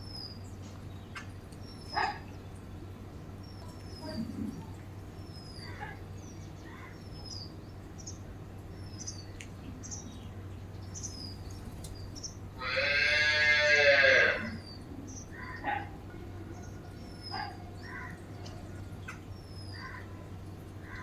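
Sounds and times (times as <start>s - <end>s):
small birds chirping: 0.0s - 12.7s, 14.4s - 21.0s
loud long animal call: 12.6s - 14.6s.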